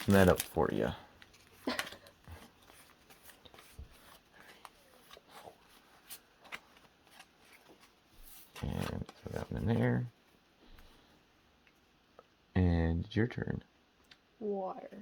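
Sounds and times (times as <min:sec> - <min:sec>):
trading cards rustling: 0:00.0 - 0:09.9.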